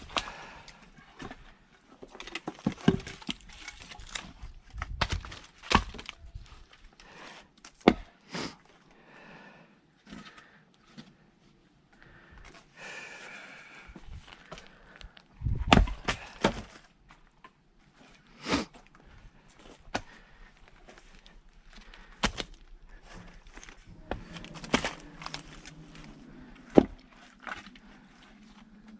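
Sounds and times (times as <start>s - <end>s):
axe splitting firewood: 2.0s - 6.3s, 7.6s - 8.1s, 15.4s - 16.9s, 19.6s - 27.8s.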